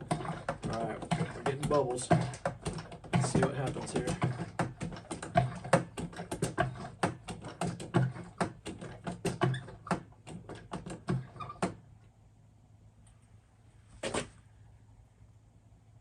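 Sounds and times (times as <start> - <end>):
hand pump sputtering and popping: 0.0 - 11.8.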